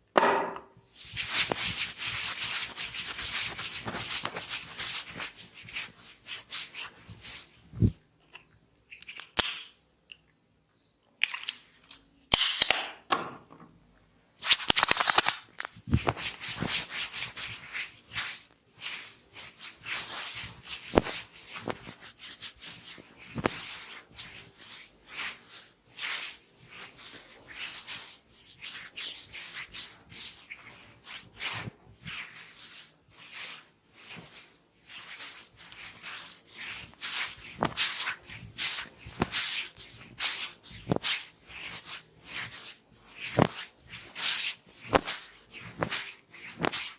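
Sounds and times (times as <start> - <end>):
hair crackles and pats: 0.9 - 8.0, 14.4 - 46.9
hands rubbing hair: 0.9 - 8.0, 14.4 - 46.9.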